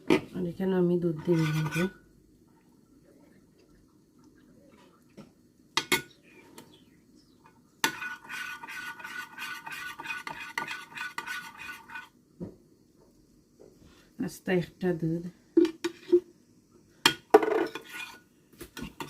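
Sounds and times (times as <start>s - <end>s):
stirring with clinking and scraping: 0.9s - 5.2s, 5.8s - 12.2s, 15.6s - 16.3s, 17.0s - 19.0s.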